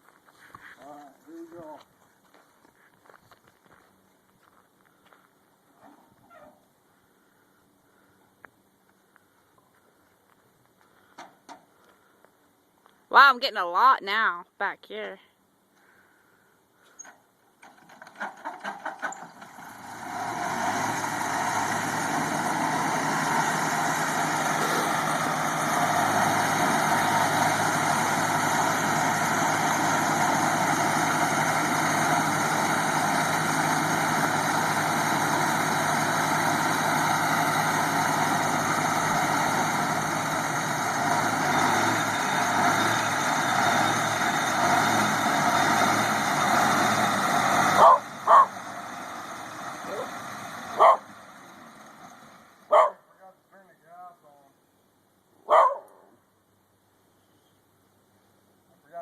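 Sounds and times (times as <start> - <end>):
drill engine starting and running: 17.0 - 52.6.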